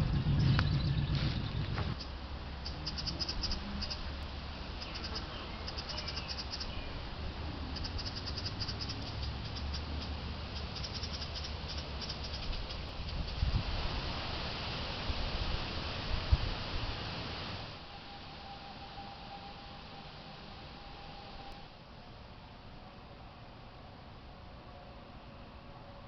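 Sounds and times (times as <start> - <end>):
steady low rumble: 0.0 - 25.7
insects chirping in trills: 1.9 - 13.6, 17.6 - 22.7.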